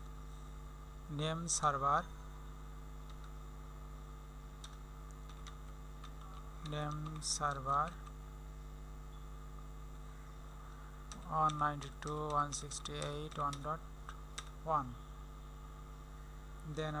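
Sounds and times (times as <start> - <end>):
steady electrical hum: 0.0 - 17.0
man talking: 1.1 - 2.1, 6.6 - 8.0, 11.3 - 13.8, 14.6 - 15.0, 16.7 - 17.0
faint keyboard keystrokes: 4.6 - 8.2.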